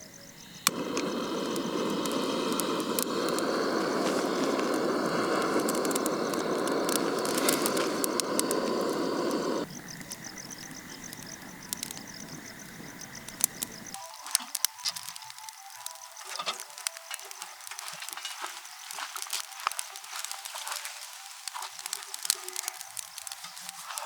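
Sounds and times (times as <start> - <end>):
campfire crackling: 0.0 - 24.0
steady rushing noise: 0.6 - 9.7.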